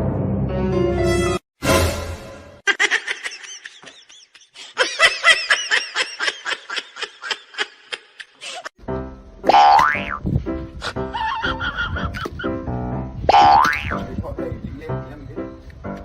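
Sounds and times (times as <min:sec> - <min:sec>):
person giggling: 0:02.7 - 0:08.7.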